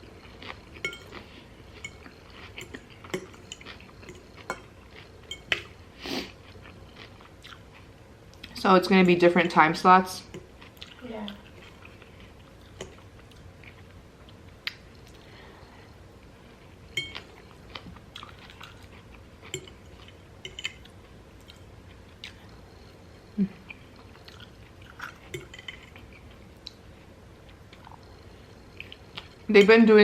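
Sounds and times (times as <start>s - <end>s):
close-up chewing with crunches: 6.2s - 8.6s, 17.1s - 23.0s.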